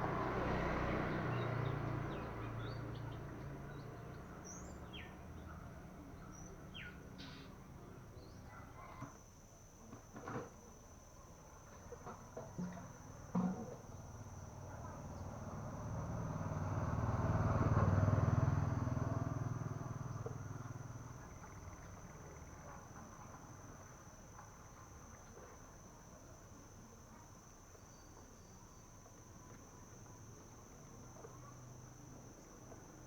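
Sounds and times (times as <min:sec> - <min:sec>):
passing vehicle rumbling: 0:00.0 - 0:05.1, 0:14.0 - 0:22.1
insect trill: 0:00.0 - 0:33.0.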